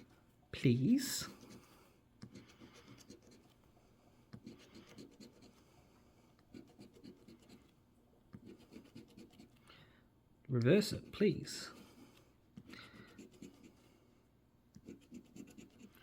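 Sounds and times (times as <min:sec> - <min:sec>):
coin scratching lottery ticket: 0:08.4 - 0:09.5, 0:14.8 - 0:16.0.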